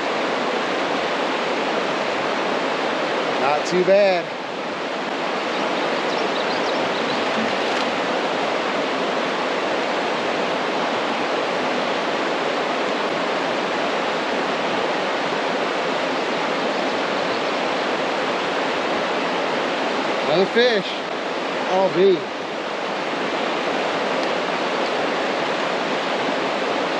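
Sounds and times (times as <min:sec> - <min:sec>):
water falling over waterfall: 0:00.0 - 0:06.2, 0:06.8 - 0:26.9.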